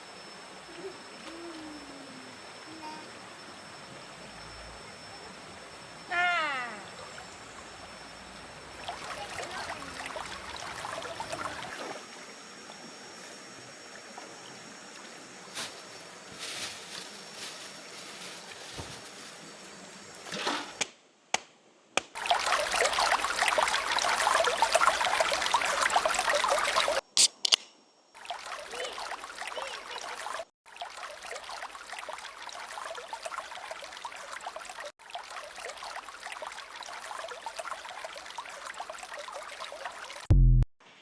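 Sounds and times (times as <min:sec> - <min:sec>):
river water flowing and splashing: 0:06.9 - 0:12.9, 0:22.1 - 0:27.0, 0:28.1 - 0:40.2.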